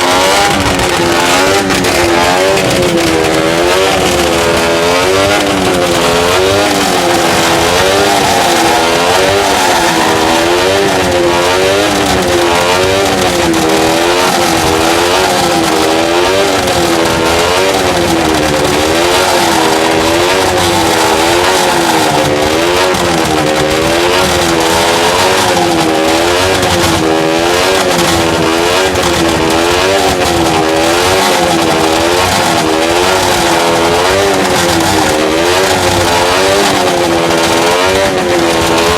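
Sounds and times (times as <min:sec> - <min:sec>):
two-stroke motorcycle engine revving: 0:00.0 - 0:38.9.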